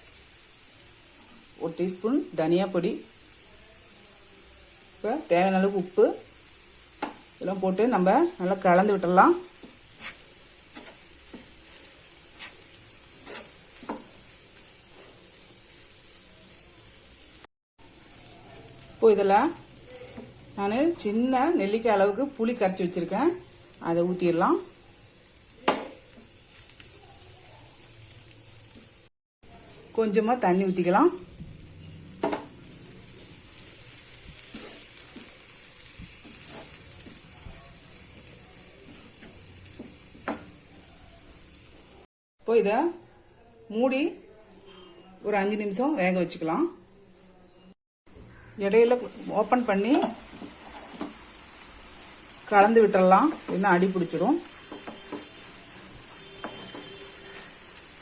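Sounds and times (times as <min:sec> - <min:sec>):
food sizzling in a pan: 0:00.0 - 0:42.9, 0:48.1 - 0:58.0
stirring clicks and scrapes: 0:09.6 - 0:14.2, 0:34.4 - 0:37.4
spatula scraping a pan: 0:09.6 - 0:16.0, 0:33.6 - 0:37.3, 0:50.0 - 0:51.3, 0:53.2 - 0:58.0.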